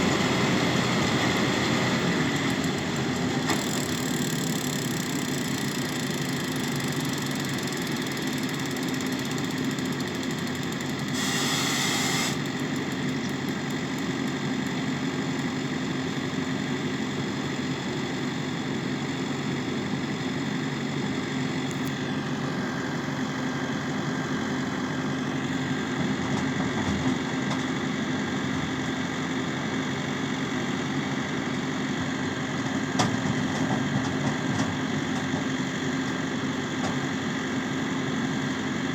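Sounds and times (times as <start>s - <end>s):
tractor engine running: 0.0s - 38.9s
high-pitched machine whine: 10.8s - 12.9s
short hiss: 11.1s - 12.4s.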